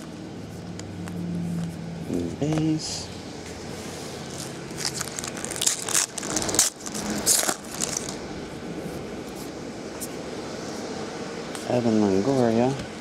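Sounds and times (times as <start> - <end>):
trading cards being handled: 3.8 - 8.2
foil wrappers crinkling: 4.3 - 8.2.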